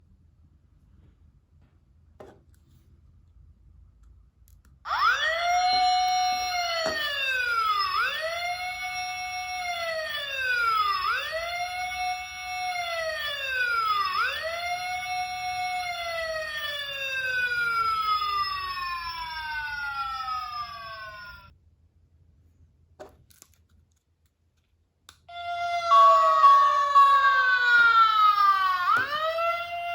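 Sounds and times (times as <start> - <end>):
electronic toy police siren: 4.9 - 21.5, 25.3 - 29.9.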